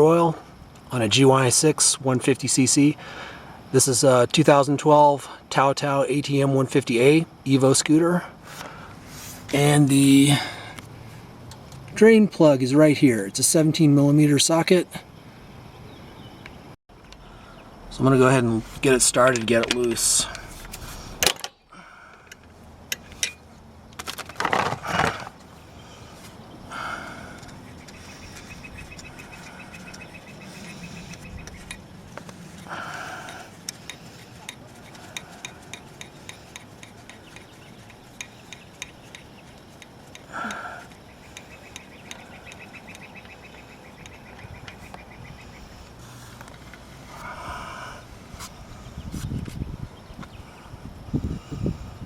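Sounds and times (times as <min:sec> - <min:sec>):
hand ratchet clicking: 0:33.2 - 0:43.1.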